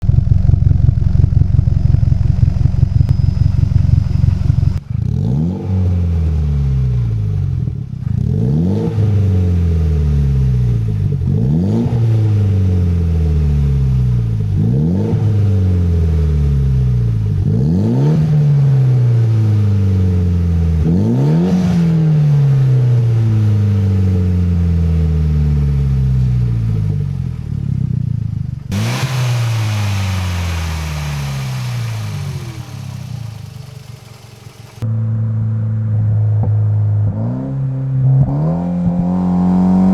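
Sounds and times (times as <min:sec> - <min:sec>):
car engine idling and revving: 0:00.0 - 0:35.1
hiss: 0:28.7 - 0:34.8.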